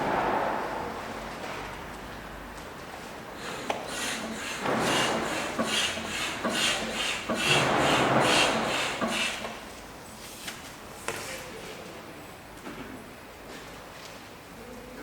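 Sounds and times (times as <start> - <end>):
rhythmic scraping strokes: 3.4 - 9.4.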